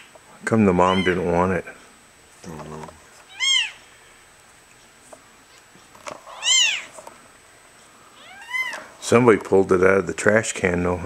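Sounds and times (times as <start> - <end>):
kitten mewing: 0.8 - 1.3, 3.3 - 3.9, 6.3 - 6.9, 8.2 - 8.8.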